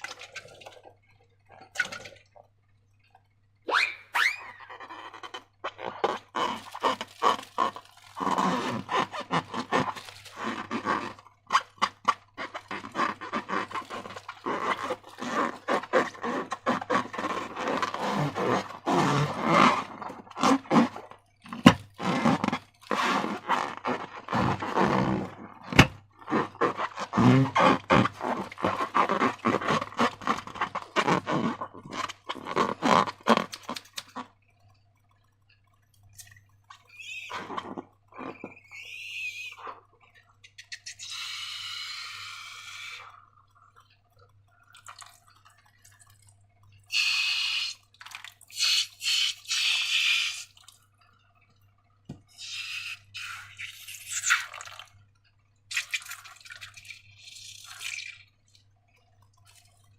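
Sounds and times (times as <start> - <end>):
slime squelching by hand: 4.2 - 34.4, 55.7 - 58.6.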